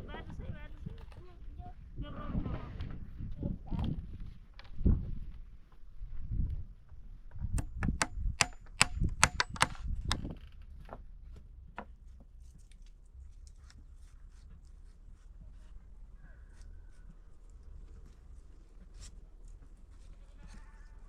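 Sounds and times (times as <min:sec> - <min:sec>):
sharp knocks: 0:07.6 - 0:10.4.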